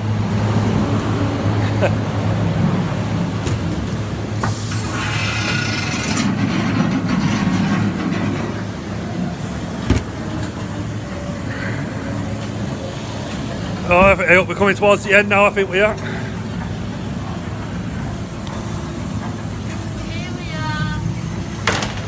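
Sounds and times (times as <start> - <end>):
ride car rumbling along track: 0.0 - 22.0
hissing burst: 4.4 - 6.5.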